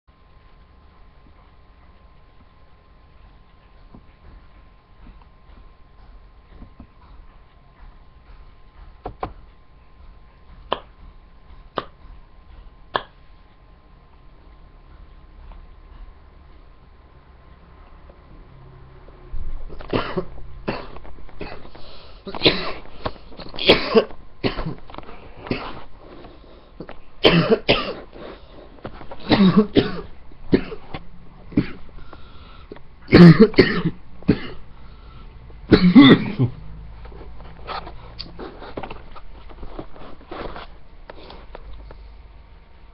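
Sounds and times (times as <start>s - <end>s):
person coughing: 19.7s - 21.7s, 22.3s - 24.9s, 25.5s - 25.8s, 27.2s - 28.1s, 29.2s - 31.8s, 33.1s - 34.6s, 35.7s - 36.6s
person breathing: 21.6s - 23.4s, 26.0s - 26.8s, 31.9s - 32.8s, 34.8s - 35.5s.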